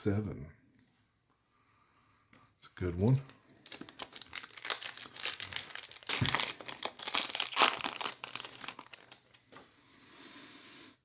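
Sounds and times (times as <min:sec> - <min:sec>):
foil wrapper crinkling: 0:03.1 - 0:09.6.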